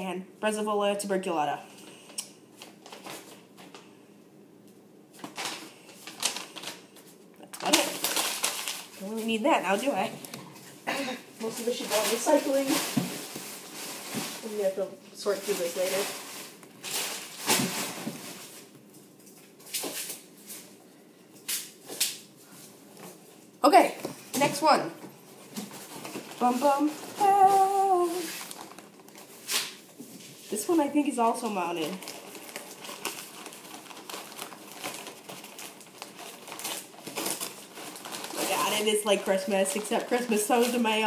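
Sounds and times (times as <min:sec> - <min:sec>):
packing material rustling: 0:02.6 - 0:03.8, 0:05.2 - 0:10.1, 0:11.4 - 0:20.8, 0:25.3 - 0:30.9, 0:31.5 - 0:41.0.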